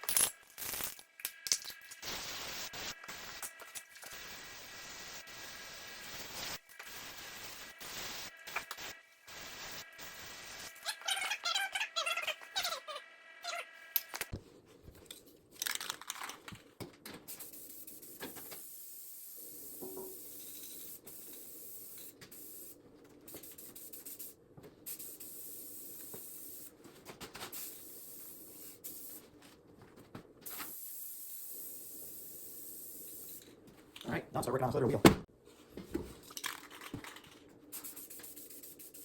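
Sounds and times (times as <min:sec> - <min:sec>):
spray-paint can hissing: 0:01.7 - 0:11.0, 0:17.3 - 0:26.7, 0:27.5 - 0:29.2, 0:30.5 - 0:33.4, 0:37.7 - 0:39.0.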